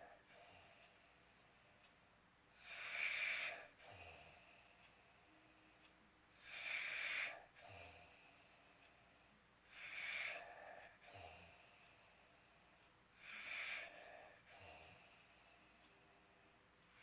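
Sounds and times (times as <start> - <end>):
person snoring: 2.6 - 4.4, 9.7 - 11.6, 13.2 - 15.0.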